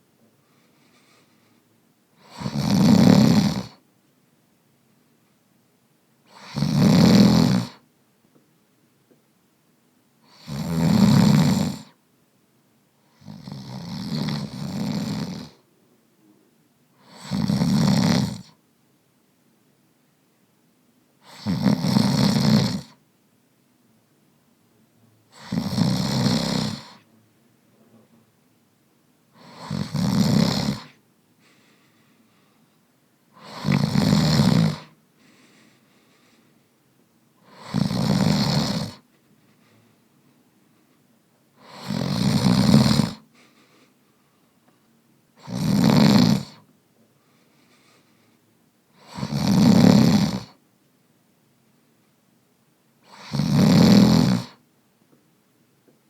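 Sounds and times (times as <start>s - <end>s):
man snoring: 2.2s - 3.8s, 6.3s - 7.8s, 10.2s - 11.9s, 13.1s - 15.6s, 17.0s - 18.5s, 21.2s - 23.0s, 25.3s - 27.1s, 29.4s - 31.0s, 33.4s - 35.0s, 37.4s - 39.0s, 41.6s - 43.2s, 45.4s - 46.6s, 49.0s - 50.6s, 53.0s - 54.6s.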